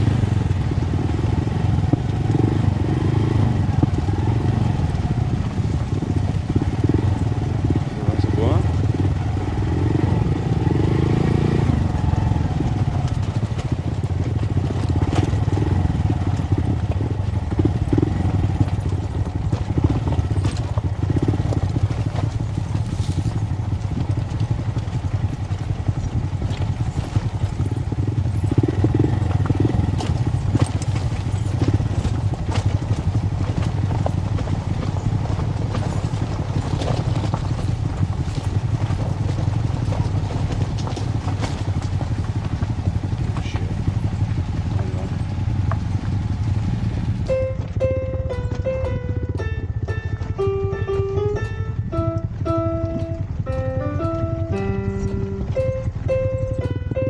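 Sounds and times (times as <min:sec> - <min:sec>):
motorcycle engine running: 0:00.0 - 0:57.0
knocks and rattles: 0:11.8 - 0:57.0.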